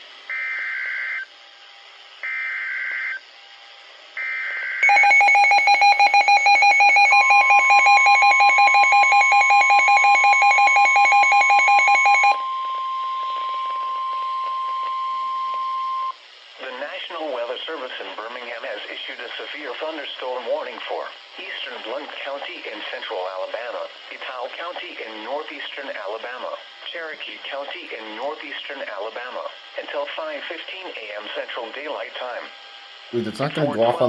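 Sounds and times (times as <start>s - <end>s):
rapid beeping alarm: 4.2s - 16.2s
steady warning tone: 4.2s - 16.2s.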